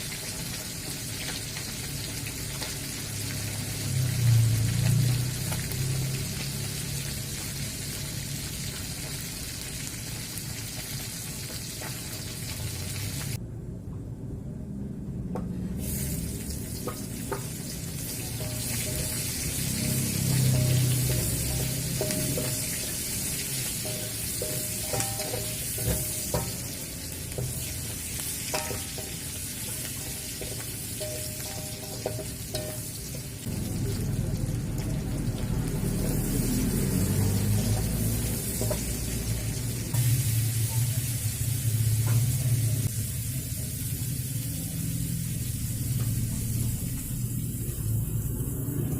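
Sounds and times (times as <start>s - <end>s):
food sizzling in oil: 0.0s - 13.4s, 15.7s - 48.9s
low rumble: 13.0s - 16.9s.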